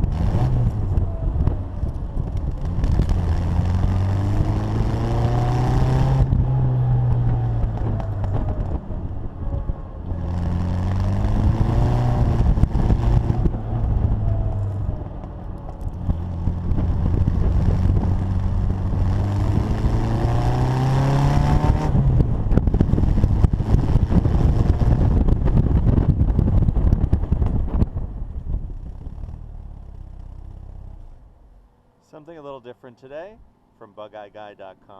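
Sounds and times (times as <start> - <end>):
wind rushing over microphone: 0.0 - 29.7
car engine accelerating: 0.0 - 31.7.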